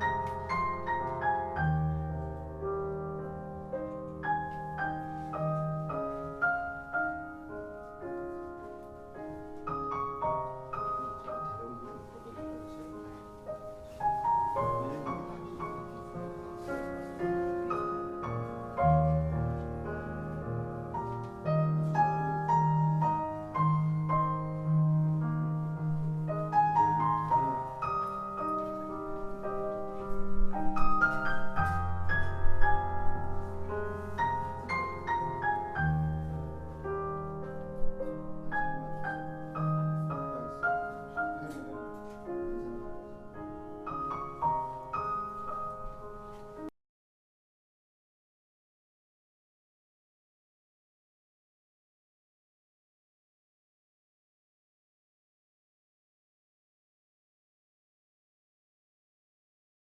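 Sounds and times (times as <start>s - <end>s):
piano music over loudspeakers: 0.0s - 46.7s.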